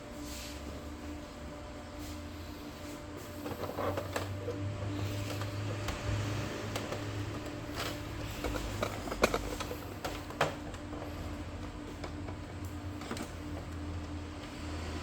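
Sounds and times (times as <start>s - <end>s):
steady low hum: 0.0s - 15.0s
clicks of handling printer parts: 6.7s - 11.0s.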